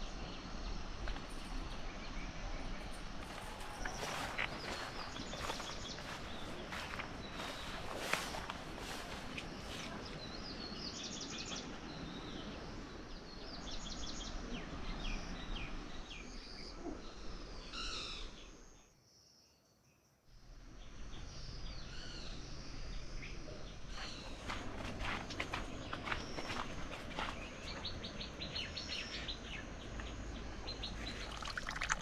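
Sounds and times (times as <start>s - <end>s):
outdoor background hiss: 0.0s - 32.0s
birds chirping and singing: 3.3s - 12.6s.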